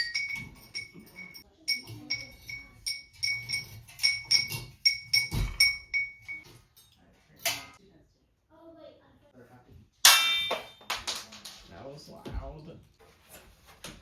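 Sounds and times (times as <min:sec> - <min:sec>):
metal hardware clatter: 0:00.0 - 0:07.8
metallic strikes ringing: 0:10.0 - 0:10.8.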